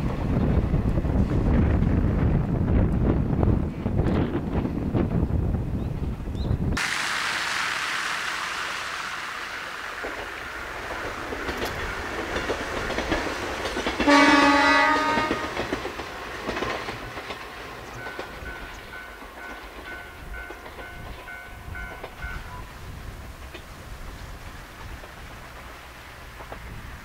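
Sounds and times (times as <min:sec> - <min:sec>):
electric train rattling past: 0:00.0 - 0:27.0
train horn blast: 0:14.0 - 0:15.7.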